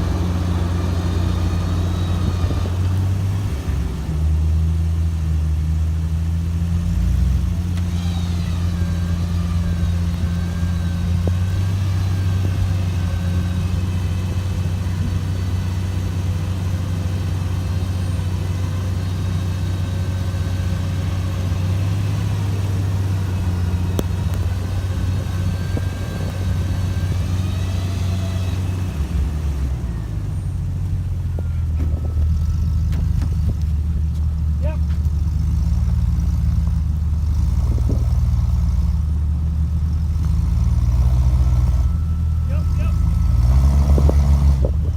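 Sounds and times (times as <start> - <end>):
electric winch motor whining: 0.0 - 4.2, 7.4 - 34.0
engines idling: 0.0 - 44.9.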